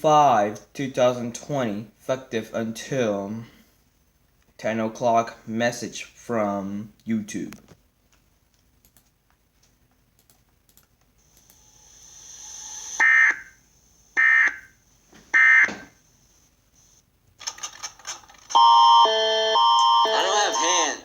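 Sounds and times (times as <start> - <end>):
rising hiss: 11.3 - 14.2.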